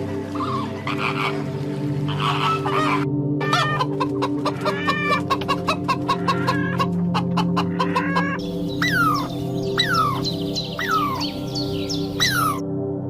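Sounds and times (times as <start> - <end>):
background music: 0.0 - 13.0
clucking animal calls: 2.1 - 11.3.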